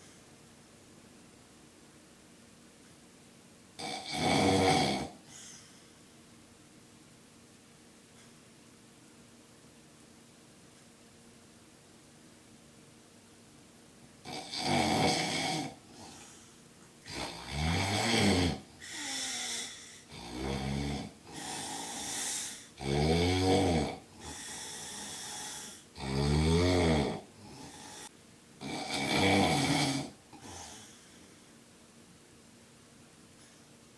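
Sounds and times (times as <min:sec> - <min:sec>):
man snoring loudly: 0:03.8 - 0:05.2, 0:14.2 - 0:15.8, 0:17.1 - 0:30.8
quiet breath out: 0:05.2 - 0:06.2, 0:18.8 - 0:20.1.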